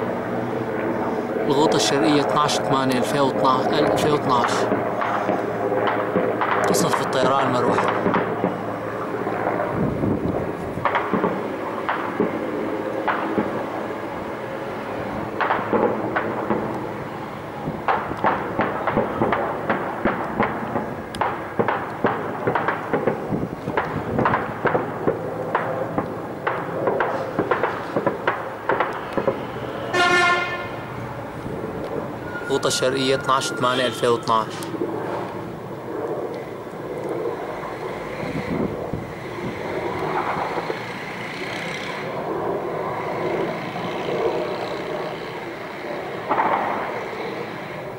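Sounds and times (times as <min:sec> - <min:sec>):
helicopter drone: 0:00.0 - 0:47.9
gunshots: 0:01.6 - 0:08.6, 0:10.8 - 0:12.4, 0:13.0 - 0:13.7, 0:15.4 - 0:16.7, 0:17.8 - 0:30.6, 0:46.2 - 0:46.9.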